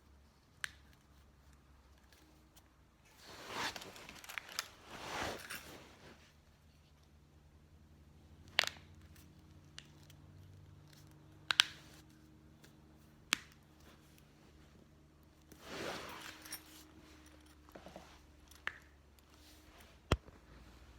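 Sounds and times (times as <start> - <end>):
soft rustle of movement: 0.0 - 7.2, 11.8 - 20.9.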